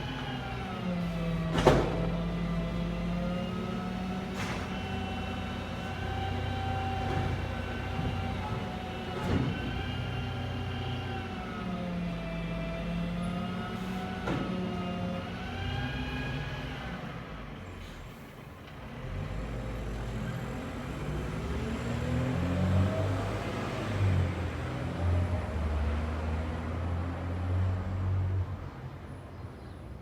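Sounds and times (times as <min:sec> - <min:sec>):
heavy vehicle engine running: 0:00.0 - 0:21.5.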